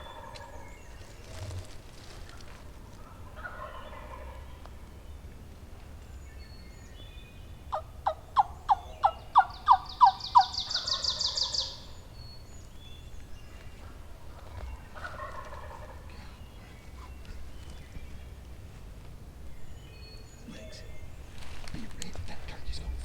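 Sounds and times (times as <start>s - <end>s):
turkey gobble with trill: 0.0s - 0.7s, 3.0s - 4.7s, 7.7s - 11.9s, 13.8s - 16.4s
turkey yelps: 3.0s - 4.6s, 7.7s - 11.9s, 13.8s - 16.1s.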